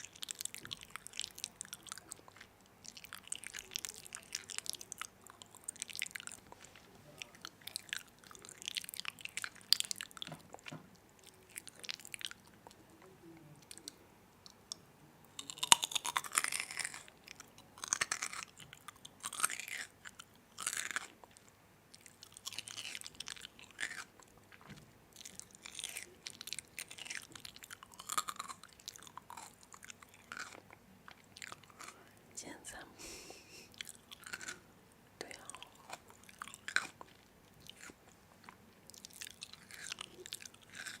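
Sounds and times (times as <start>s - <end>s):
chewing crunchy food: 0.0s - 32.2s, 33.7s - 41.0s.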